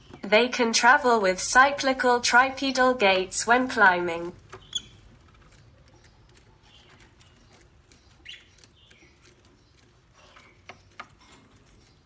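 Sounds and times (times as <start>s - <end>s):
parrot chirps and squeaks: 4.6s - 5.2s, 6.0s - 12.0s.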